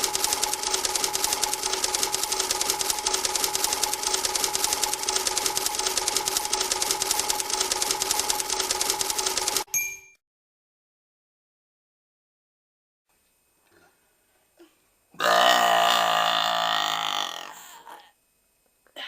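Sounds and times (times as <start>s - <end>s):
machine clicking rapidly: 0.0s - 9.7s
machine humming: 0.0s - 9.7s.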